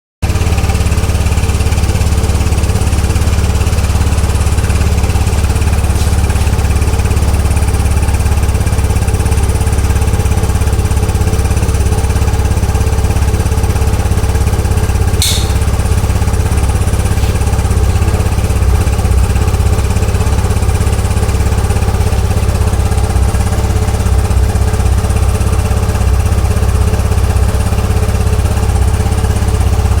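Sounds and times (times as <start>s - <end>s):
scooter engine running: 0.2s - 30.0s
brief high-pitched engine noise: 15.2s - 15.9s.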